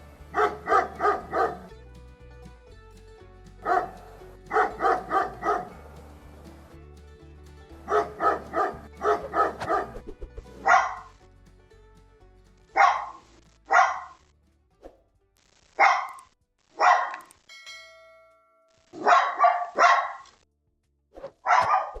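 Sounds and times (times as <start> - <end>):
dog barking: 0.3 - 1.7, 3.6 - 5.9, 7.8 - 11.1, 12.8 - 14.2, 15.8 - 17.3, 19.0 - 20.3, 21.4 - 22.0.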